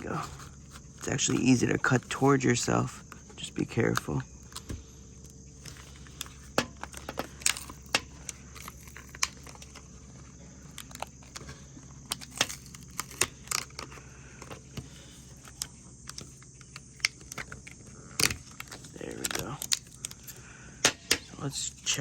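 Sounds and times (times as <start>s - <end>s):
plastic packaging crinkling: 0.0s - 20.4s.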